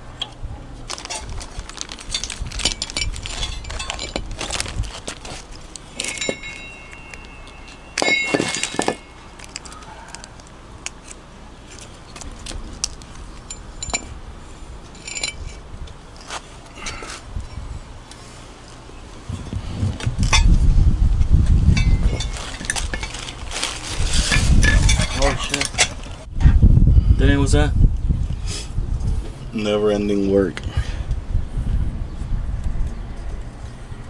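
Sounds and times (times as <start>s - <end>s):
metal tools clinking and clanking: 0.9s - 10.3s, 13.4s - 14.1s, 14.9s - 15.6s, 21.7s - 26.3s.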